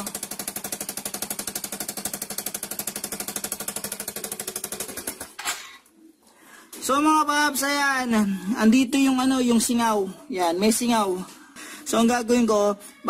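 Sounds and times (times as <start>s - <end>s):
motorcycle engine idling: 0.0s - 5.4s.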